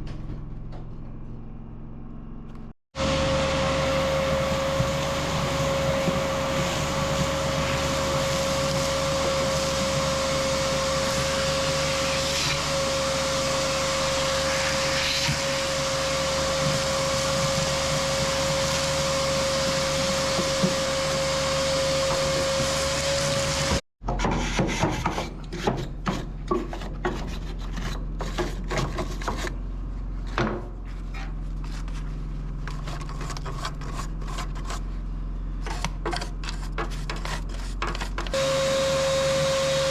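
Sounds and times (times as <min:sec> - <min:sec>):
power tool whining: 0:38.2 - 0:39.9.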